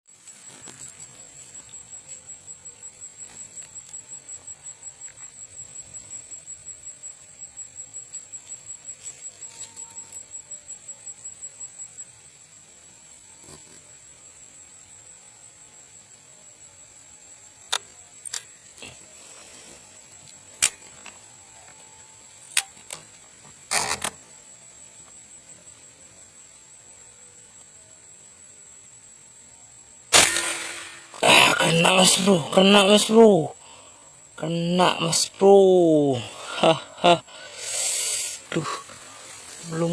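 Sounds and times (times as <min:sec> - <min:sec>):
high-pitched insect trill: 0:00.0 - 0:39.9.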